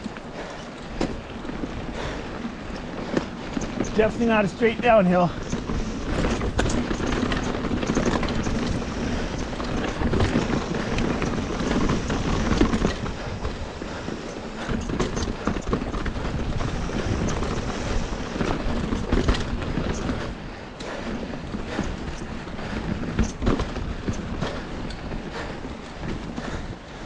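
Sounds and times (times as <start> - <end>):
bike rattling and knocking: 0.0 - 27.0
tyres on dirt: 0.0 - 27.0
wind noise on microphone: 0.0 - 27.0.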